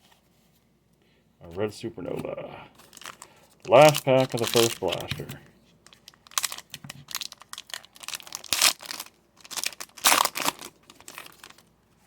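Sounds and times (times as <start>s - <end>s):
foil wrapper crinkling: 2.8s - 11.7s.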